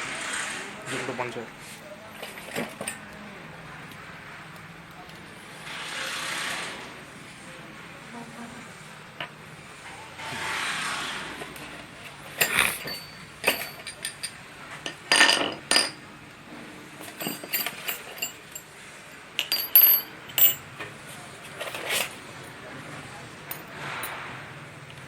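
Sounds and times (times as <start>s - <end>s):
metal clinks and knocks: 2.2s - 3.1s, 11.4s - 16.0s, 17.0s - 18.8s, 19.4s - 22.6s, 23.5s - 24.2s.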